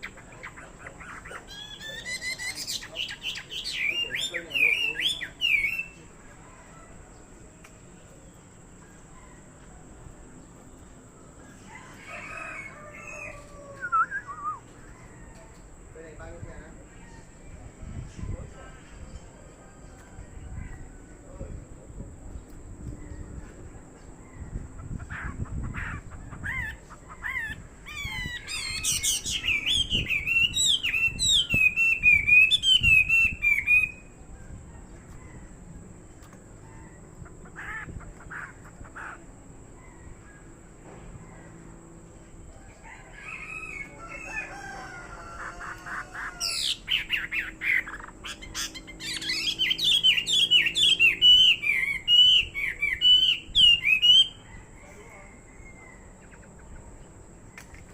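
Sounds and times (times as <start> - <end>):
songbird singing rapid varied phrases: 0.0 - 6.4, 24.5 - 34.4, 46.4 - 54.5.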